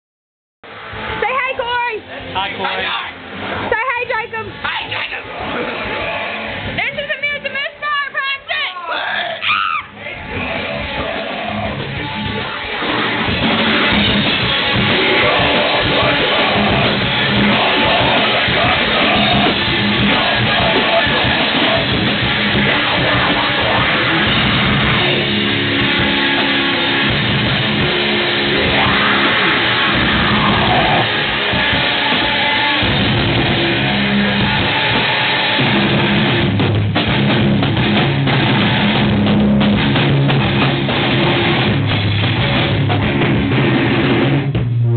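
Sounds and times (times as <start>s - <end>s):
electric guitar: 9.4s - 44.9s
drum kit: 10.2s - 44.9s.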